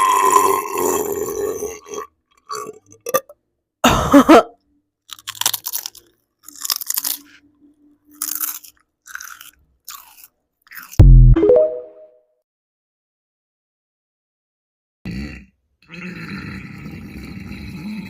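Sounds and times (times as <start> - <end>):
person chewing crunchy food: 5.0 - 7.5, 8.1 - 11.1.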